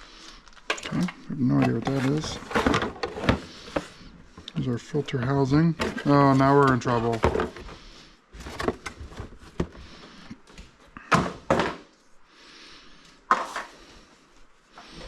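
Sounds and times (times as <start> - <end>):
plastic parts knocking and clattering: 0.7 - 4.5, 5.1 - 7.8, 8.4 - 9.8, 11.0 - 11.8.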